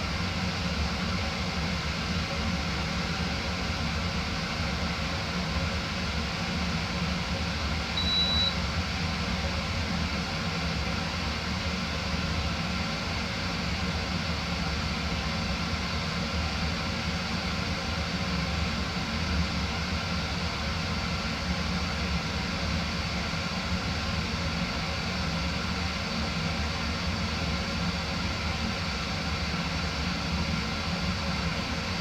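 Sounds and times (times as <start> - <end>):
ceiling fan air rush: 0.0 - 32.0
short high beep: 8.0 - 8.6.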